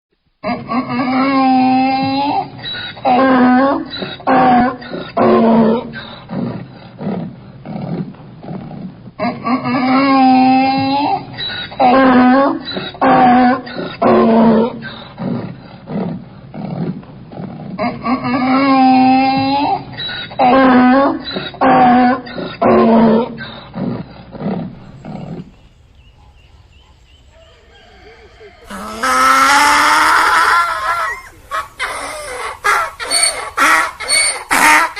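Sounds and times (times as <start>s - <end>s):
donkey braying: 0.4s - 7.0s, 9.2s - 16.2s, 24.7s - 34.9s
breathy rhythmic pulses: 3.9s - 20.4s, 21.3s - 34.9s.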